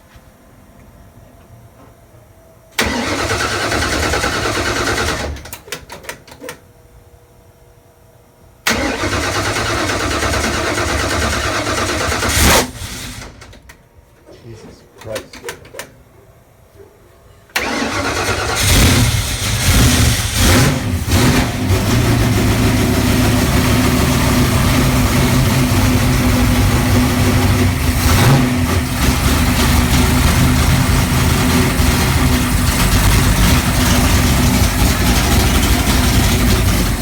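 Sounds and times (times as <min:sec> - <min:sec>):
vee eight engine revving: 0:17.6 - 0:37.0.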